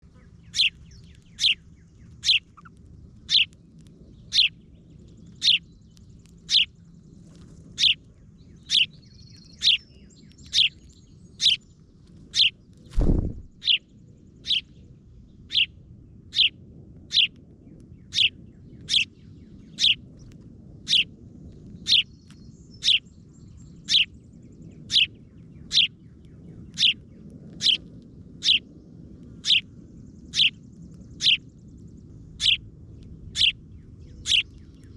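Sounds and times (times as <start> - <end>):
bird chirping: 0.0 - 15.7, 18.0 - 20.0, 21.7 - 27.8, 29.4 - 34.9
faint low rumble: 0.0 - 34.9
low thump: 13.0 - 13.6.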